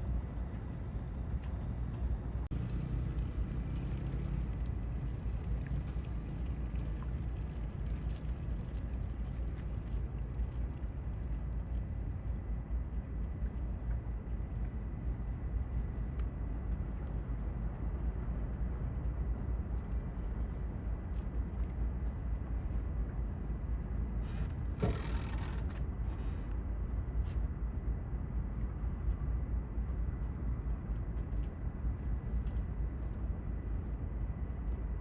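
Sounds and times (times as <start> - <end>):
low rumble: 0.0 - 35.0
harbour ambience hiss: 24.2 - 26.6.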